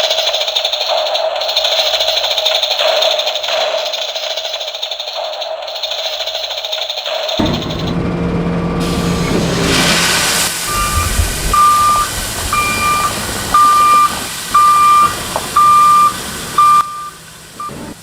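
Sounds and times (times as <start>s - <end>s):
rushing noise: 7.4s - 16.6s
low engine hum: 7.4s - 18.0s
reversing alarm beeping: 10.6s - 17.8s.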